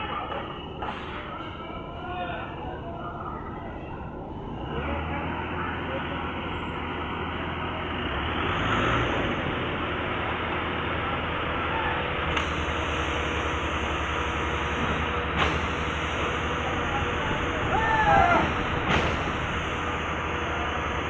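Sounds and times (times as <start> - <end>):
concrete mixer and pump running: 9.6 - 21.0.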